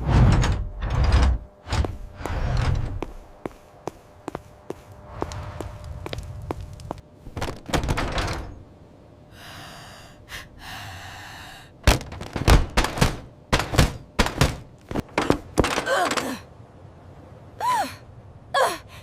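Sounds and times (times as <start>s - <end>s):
loud sharp knocks and thuds: 11.8s - 15.9s.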